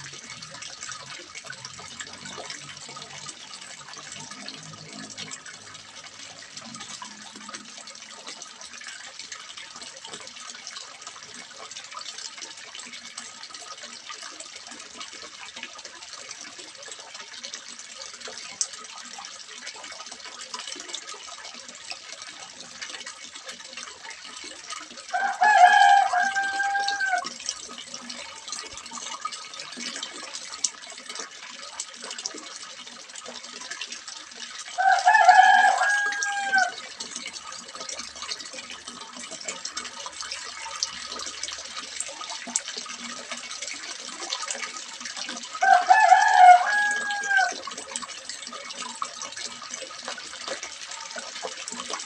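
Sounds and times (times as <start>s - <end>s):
water splashing into pond: 0.0s - 52.0s
rooster crowing: 25.1s - 27.4s, 34.8s - 36.8s, 45.6s - 47.6s.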